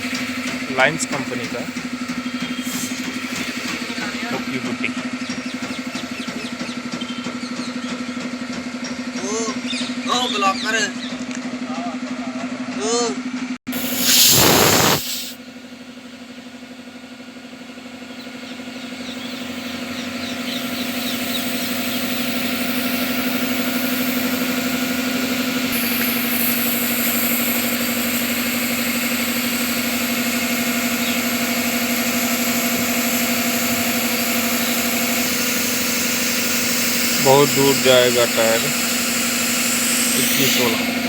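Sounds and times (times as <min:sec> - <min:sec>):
engine running: 0:00.0 - 0:41.0
brief loud noise: 0:13.8 - 0:15.4.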